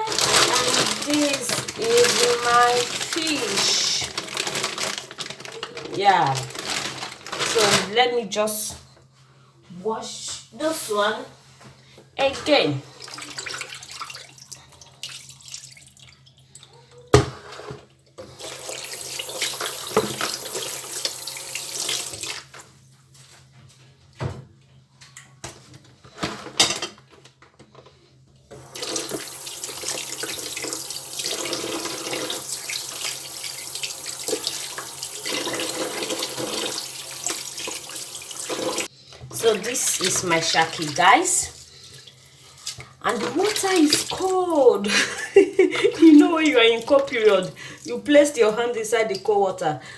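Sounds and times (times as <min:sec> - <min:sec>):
tap water running into sink: 0:00.0 - 0:07.6, 0:18.2 - 0:22.6, 0:28.5 - 0:42.1
meat washed by hand: 0:00.0 - 0:08.0, 0:12.3 - 0:16.8, 0:18.3 - 0:22.7, 0:28.5 - 0:49.6.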